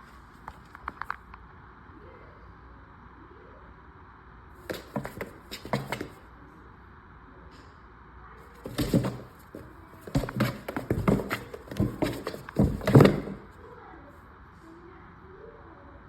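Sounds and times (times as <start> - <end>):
cat scrambling in cardboard box: 4.7 - 6.2, 8.6 - 13.5.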